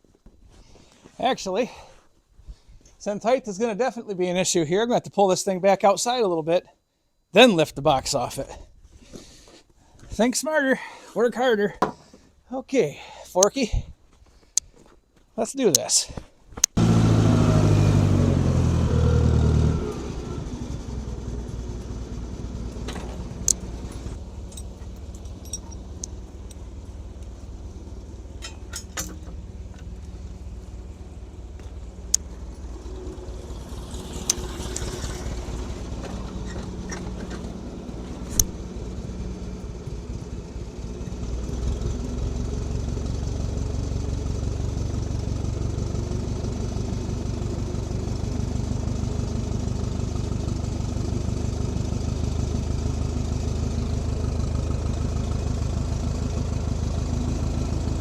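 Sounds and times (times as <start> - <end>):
forklift engine revving and idling: 16.6 - 58.0
sharp clicks: 23.4 - 23.7, 34.2 - 34.9.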